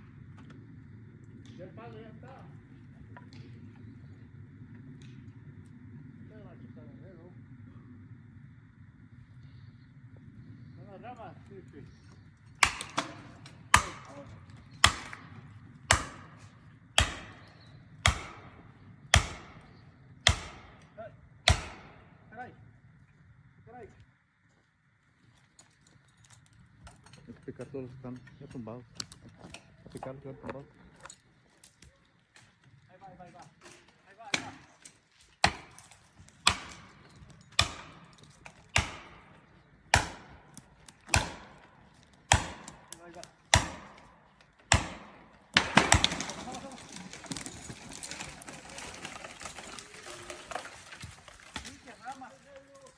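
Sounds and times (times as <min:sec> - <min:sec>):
tool striking wood: 0:12.6 - 0:14.2, 0:14.8 - 0:16.4, 0:17.0 - 0:19.6, 0:20.2 - 0:20.8, 0:21.4 - 0:21.9, 0:37.6 - 0:38.0, 0:39.9 - 0:40.4, 0:41.0 - 0:41.5, 0:43.5 - 0:44.0, 0:44.6 - 0:46.5.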